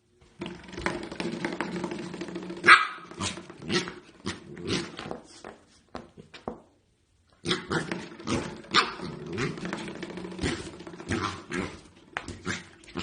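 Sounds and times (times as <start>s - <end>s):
dog barking: 2.6s - 3.1s.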